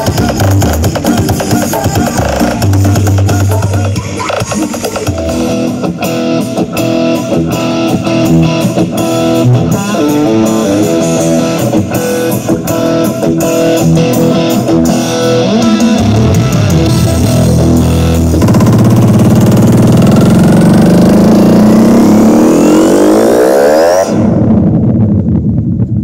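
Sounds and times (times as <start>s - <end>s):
guitar-led music over sound system: 0.0s - 23.3s.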